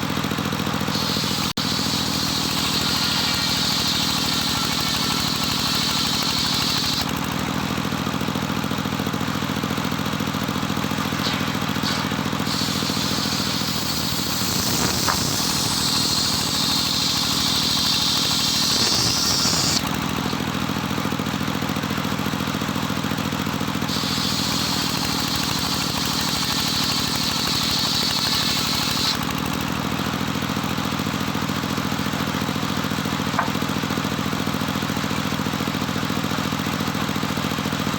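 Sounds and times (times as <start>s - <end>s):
saw engine running: 0.0s - 37.8s
saw blade cutting wood whine: 0.8s - 7.1s, 10.8s - 20.8s, 23.9s - 29.2s.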